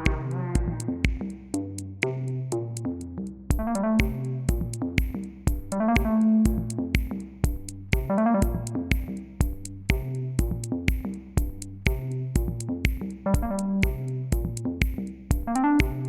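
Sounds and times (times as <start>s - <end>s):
synthesizer notes: 0.0s - 1.2s, 3.5s - 7.0s, 7.9s - 9.1s, 13.3s - 14.2s, 15.4s - 16.0s
drum machine beat: 0.0s - 2.8s, 3.5s - 16.0s.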